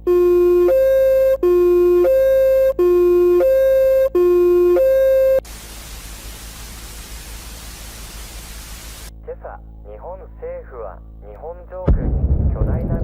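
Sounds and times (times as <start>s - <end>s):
two-tone alert tone: 0.0s - 5.4s
static hiss: 5.4s - 9.1s.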